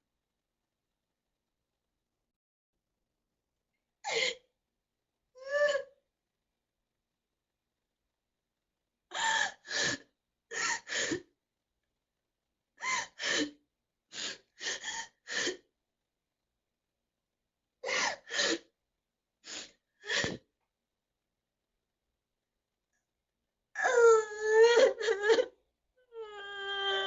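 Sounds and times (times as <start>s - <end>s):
girl sobbing with gasping breaths: 4.0s - 4.4s, 9.1s - 11.3s, 23.8s - 27.0s.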